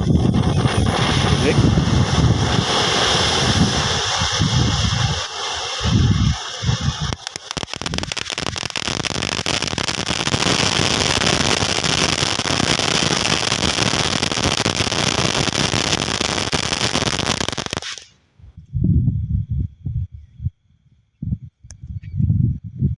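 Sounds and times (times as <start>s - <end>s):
firework crackling: 0.0s - 18.2s.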